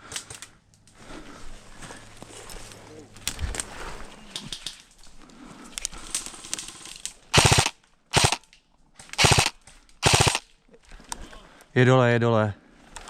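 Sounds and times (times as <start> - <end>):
faint clicks: 4.3 - 7.2
airsoft gun full-auto bursts: 6.2 - 8.4, 9.2 - 10.4.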